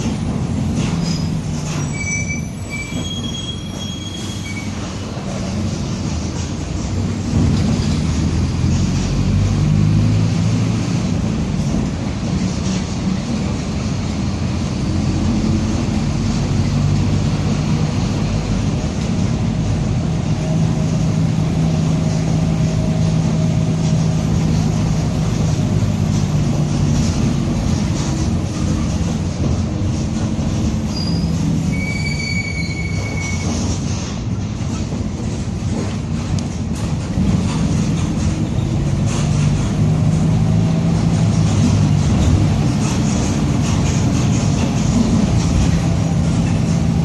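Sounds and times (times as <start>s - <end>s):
bus differential whining: 0.0s - 47.0s
brief high squeal: 1.0s - 4.9s, 30.9s - 33.8s.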